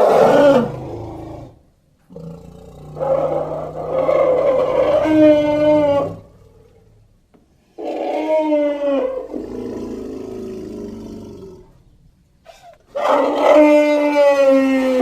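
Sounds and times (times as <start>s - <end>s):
elephant trumpeting: 2.9s - 6.6s.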